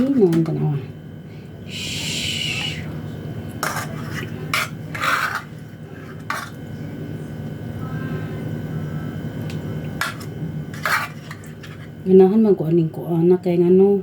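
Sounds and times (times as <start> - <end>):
low hum: 0.0 - 12.1
cutlery scraping on a plate: 3.6 - 6.6, 10.0 - 11.9.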